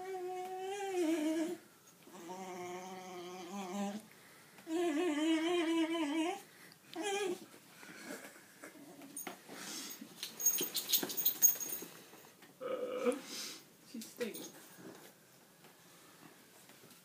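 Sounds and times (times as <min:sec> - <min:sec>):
dog moaning: 0:00.0 - 0:04.0, 0:04.7 - 0:06.4, 0:12.6 - 0:13.2.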